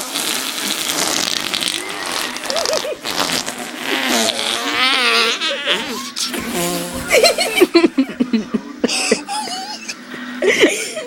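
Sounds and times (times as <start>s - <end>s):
person imitating fart sound: 0.0s - 7.4s.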